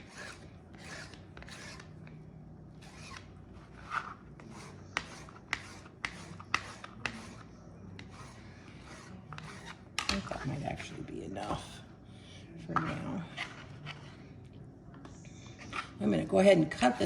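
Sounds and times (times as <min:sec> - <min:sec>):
knife slicing meat: 0:00.0 - 0:02.0, 0:02.8 - 0:10.9.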